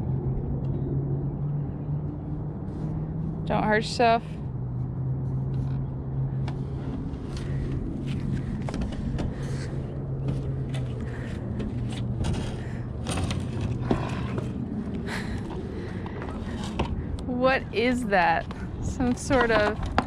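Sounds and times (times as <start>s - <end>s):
steady low hum: 0.0s - 20.0s
scrap metal knocking and scraping: 6.5s - 17.1s, 19.0s - 20.0s.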